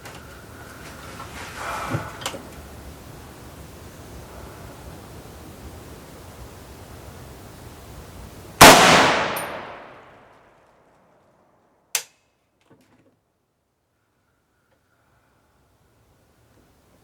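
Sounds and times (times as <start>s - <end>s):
rifle shot: 8.6s - 10.3s
sharp click: 11.9s - 12.2s.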